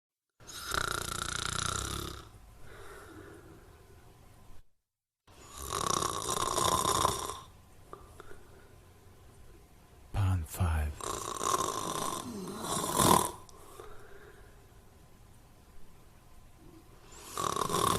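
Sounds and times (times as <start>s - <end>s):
person snoring: 0.5s - 2.3s, 10.6s - 13.4s
quiet breathing: 2.5s - 4.1s, 7.9s - 9.2s, 13.5s - 14.9s.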